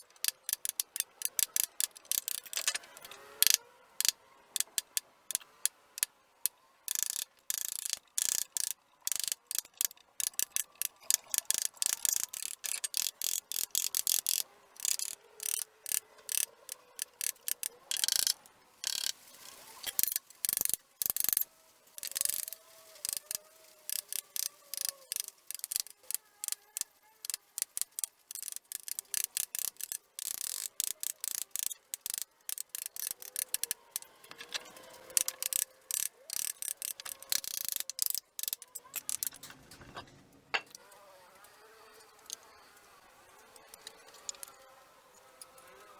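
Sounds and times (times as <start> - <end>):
carving tool scraping wood: 38.6 - 40.2.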